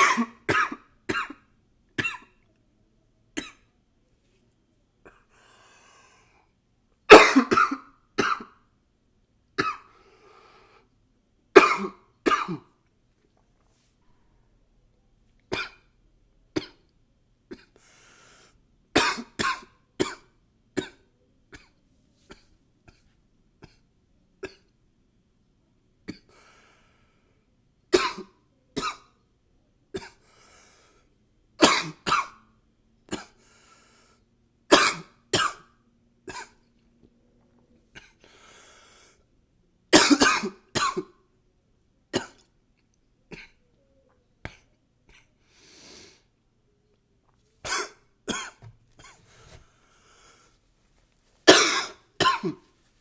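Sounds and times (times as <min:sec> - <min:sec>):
man coughing: 0:00.0 - 0:01.4, 0:07.1 - 0:08.4, 0:11.6 - 0:12.6, 0:40.0 - 0:41.0, 0:51.5 - 0:52.6.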